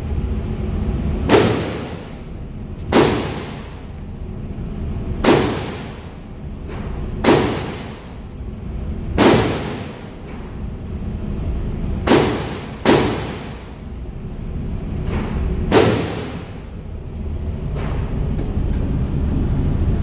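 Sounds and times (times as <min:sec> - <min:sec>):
steady low rumble: 0:00.0 - 0:20.0
gunshots with ringing decay: 0:01.3 - 0:02.1, 0:02.9 - 0:03.8, 0:05.2 - 0:06.1, 0:07.2 - 0:08.3, 0:09.2 - 0:10.1, 0:12.1 - 0:13.8, 0:15.7 - 0:16.6.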